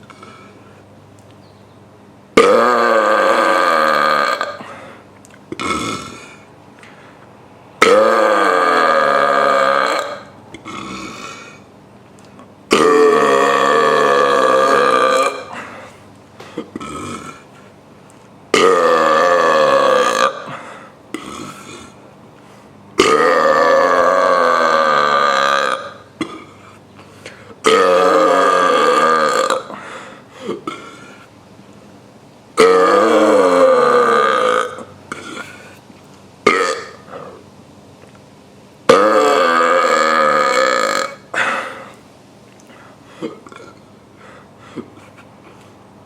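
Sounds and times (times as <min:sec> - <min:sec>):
person burping: 0:02.4 - 0:06.5, 0:07.8 - 0:11.6, 0:12.7 - 0:17.5, 0:18.5 - 0:22.0, 0:23.0 - 0:31.2, 0:32.6 - 0:35.8, 0:36.4 - 0:37.4, 0:38.9 - 0:42.0, 0:43.2 - 0:43.9.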